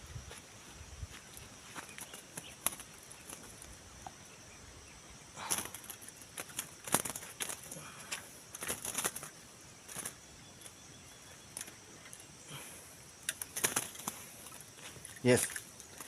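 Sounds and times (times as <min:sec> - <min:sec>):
bird wings fluttering: 0:01.6 - 0:03.8, 0:05.4 - 0:10.8, 0:13.3 - 0:16.0.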